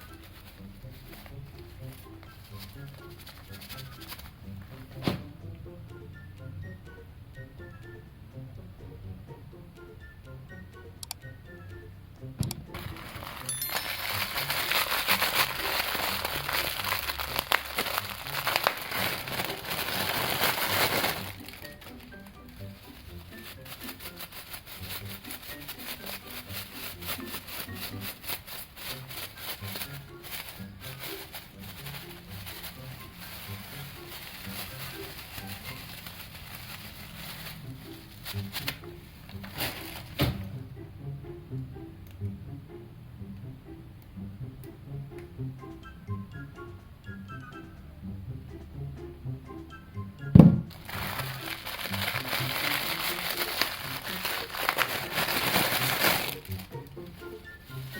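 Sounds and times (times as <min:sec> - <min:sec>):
soft background music: 0:00.0 - 0:57.9
sharp clicks: 0:10.8 - 0:11.3
packaging crackling and crinkling: 0:12.8 - 0:40.3, 0:50.7 - 0:57.9.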